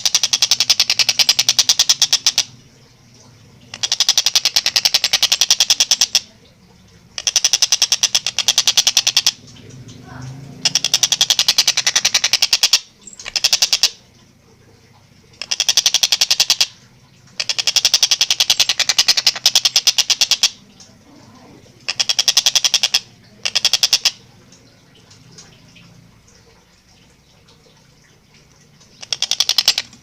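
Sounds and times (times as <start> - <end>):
kingfisher calling in cackling rattles: 0.0 - 2.6, 3.7 - 6.3, 7.2 - 9.4, 10.0 - 14.0, 15.4 - 20.6, 21.8 - 24.3, 28.8 - 30.0.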